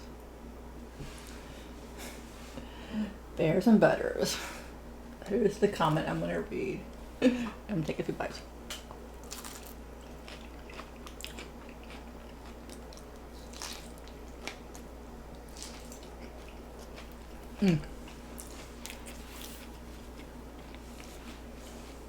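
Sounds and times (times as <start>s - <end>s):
crunching and wet chewing: 8.7s - 22.0s.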